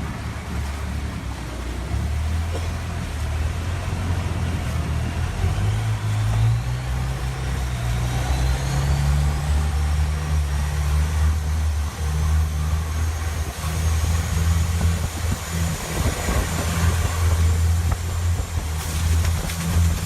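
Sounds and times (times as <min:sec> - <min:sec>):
boat engine humming: 0:00.0 - 0:20.0
rushing water noise: 0:00.0 - 0:20.0.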